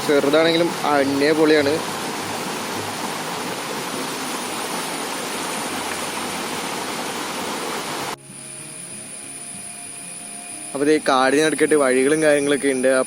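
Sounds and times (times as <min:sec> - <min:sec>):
small waterfall rushing: 0:00.0 - 0:10.0.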